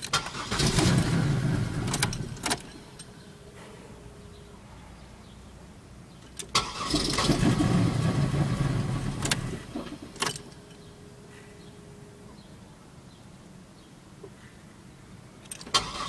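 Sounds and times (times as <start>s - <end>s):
car engine cranking: 0.0s - 3.2s, 6.1s - 10.8s, 15.4s - 16.0s.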